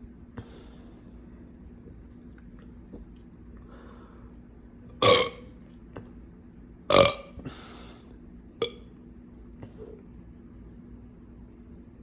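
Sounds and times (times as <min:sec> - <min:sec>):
person burping loudly: 0:05.0 - 0:05.5, 0:06.9 - 0:07.4.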